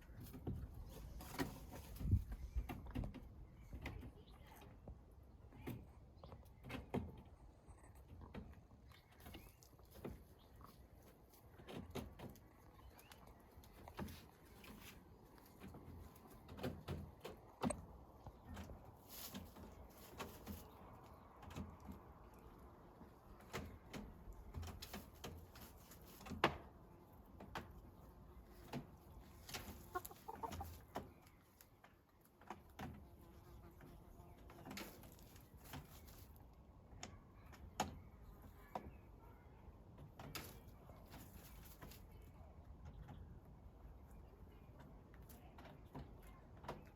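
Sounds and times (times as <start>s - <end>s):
hens murmuring softly: 0.0s - 46.9s
hens scratching and pecking: 0.0s - 46.9s
hens clucking softly: 27.8s - 32.3s.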